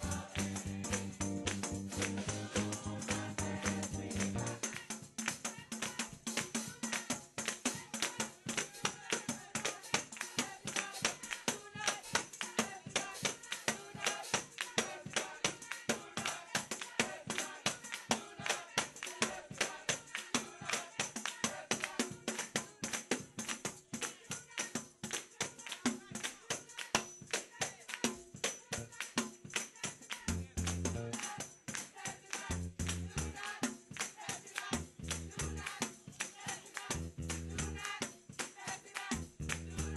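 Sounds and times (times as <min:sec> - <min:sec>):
faint church praise music: 0:00.0 - 0:05.1, 0:32.3 - 0:33.7, 0:34.4 - 0:39.7
tambourine beaten fast: 0:00.0 - 0:39.9.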